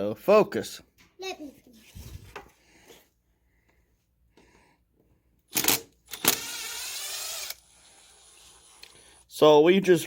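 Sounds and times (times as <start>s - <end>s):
mechanical whir: 5.6s - 9.0s.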